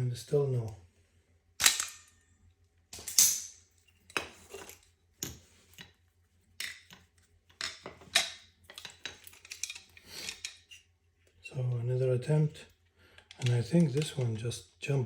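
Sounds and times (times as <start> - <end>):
metal parts clicking and clinking: 3.0 - 6.0, 6.6 - 10.9, 13.2 - 14.5.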